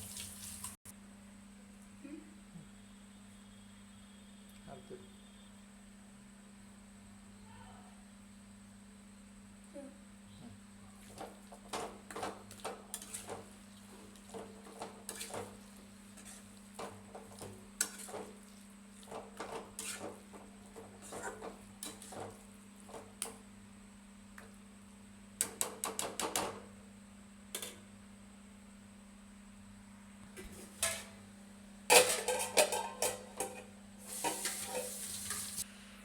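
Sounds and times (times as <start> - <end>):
metal utensils clinking on cookware: 30.8 - 31.2, 31.9 - 35.6.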